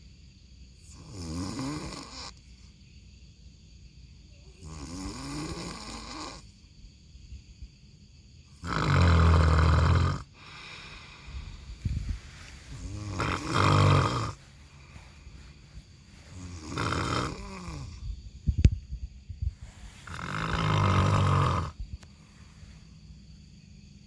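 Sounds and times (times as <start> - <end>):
person snoring: 0.9 - 2.4, 4.6 - 6.4, 8.6 - 11.7, 12.4 - 14.5, 16.2 - 18.0, 19.9 - 21.8
quiet breathing: 9.1 - 24.0.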